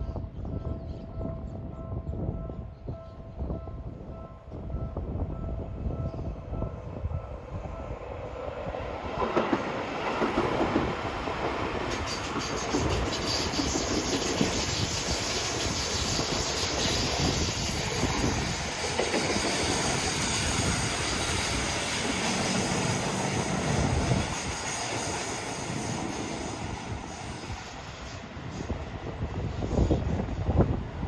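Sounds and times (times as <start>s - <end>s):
train wheels clattering over rails: 9.0s - 27.1s.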